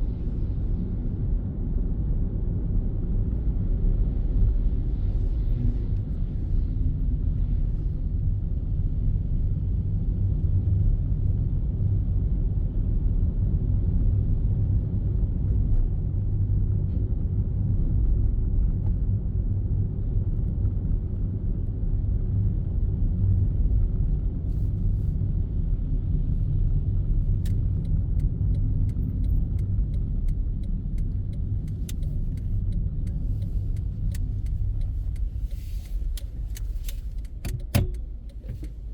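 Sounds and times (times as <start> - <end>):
car engine and road noise: 0.0 - 38.9
faint sharp ticks: 27.4 - 38.7.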